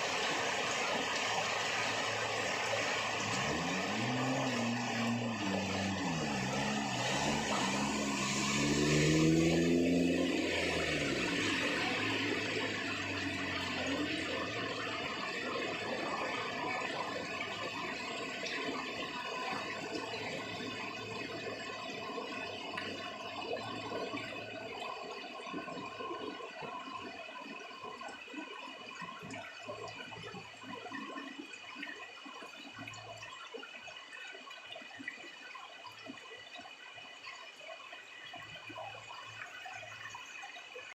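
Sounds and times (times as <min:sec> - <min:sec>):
heavy rain pouring: 0:00.0 - 0:17.8.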